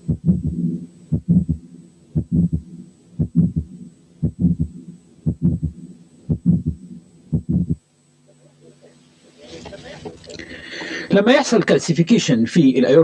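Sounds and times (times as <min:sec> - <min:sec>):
heartbeat with faint murmur: 0:00.0 - 0:07.9.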